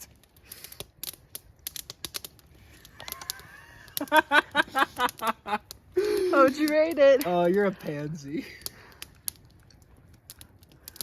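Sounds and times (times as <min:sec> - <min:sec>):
person laughing: 0:03.0 - 0:06.5.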